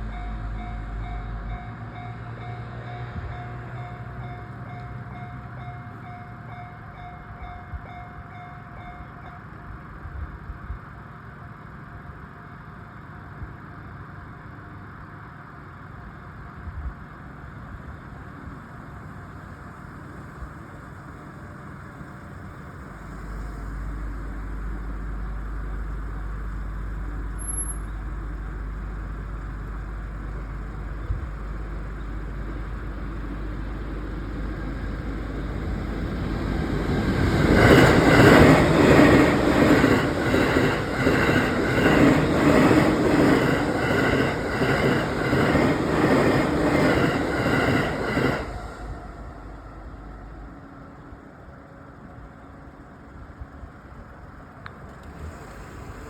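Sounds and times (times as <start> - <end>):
electric train passing: 0.0 - 56.0
train wheels clattering over rails: 30.4 - 49.5.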